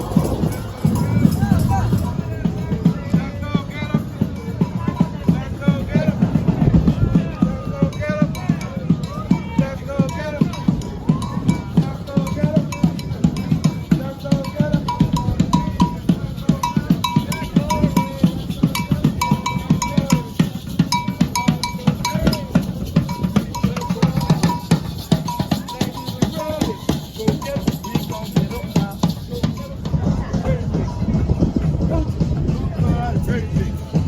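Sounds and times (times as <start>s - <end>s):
short bell-like tone: 0.0s - 2.6s
fast parade drumming: 0.0s - 34.0s.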